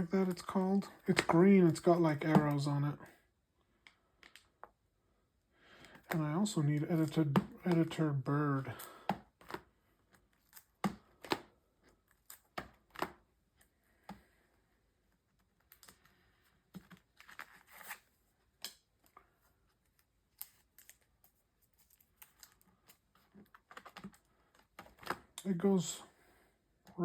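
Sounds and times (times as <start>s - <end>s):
cards rustling and sliding: 8.7s - 14.3s, 15.0s - 25.4s
cards tapping and clicking: 8.8s - 9.7s, 10.6s - 11.6s, 12.3s - 13.2s.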